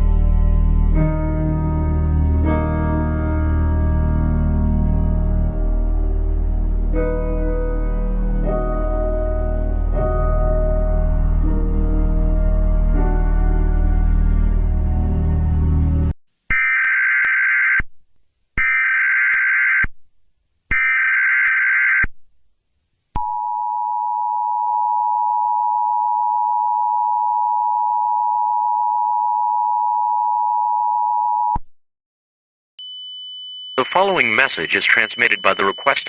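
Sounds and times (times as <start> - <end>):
digital warbling data tones: 33.8 - 36.0
two-tone attention signal: 33.8 - 36.0.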